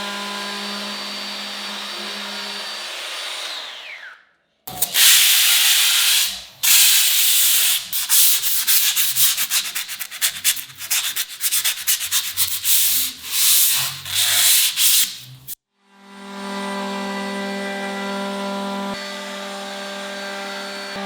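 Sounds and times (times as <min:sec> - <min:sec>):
sandpaper rubbing on wood: 0:04.7 - 0:15.6.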